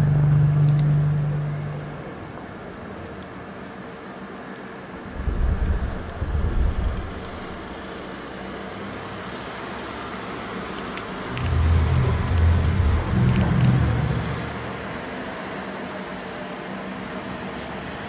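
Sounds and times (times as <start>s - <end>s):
steady hiss: 4.8s - 18.0s
deep low rumble: 5.1s - 7.6s, 11.2s - 15.1s.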